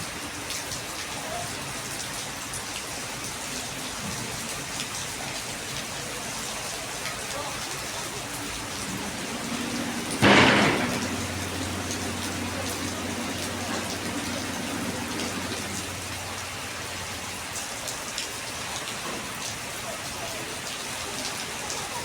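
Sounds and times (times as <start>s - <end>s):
heavy rain hissing: 0.0s - 22.0s
sudden loud burst of noise: 8.6s - 16.4s
low steady hum: 8.7s - 16.4s.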